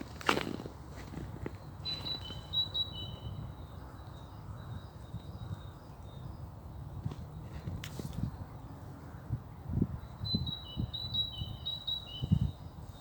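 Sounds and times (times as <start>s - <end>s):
songbird singing high notes: 1.8s - 6.5s, 10.0s - 13.0s.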